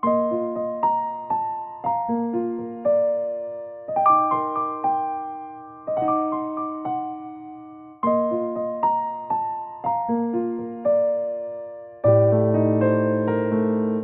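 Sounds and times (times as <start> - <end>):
slow gentle piano piece: 0.0 - 14.0.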